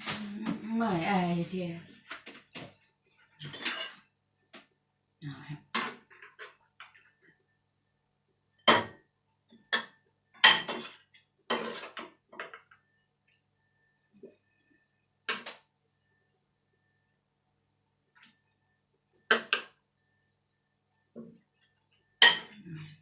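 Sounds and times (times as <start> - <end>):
utensils and dishes clattering: 3.4 - 4.1, 9.6 - 12.7, 22.2 - 23.0.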